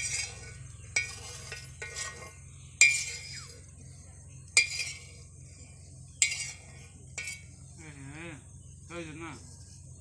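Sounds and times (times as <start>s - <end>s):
metal utensil clinking on pot: 0.0s - 3.5s, 4.6s - 5.2s, 6.2s - 7.5s.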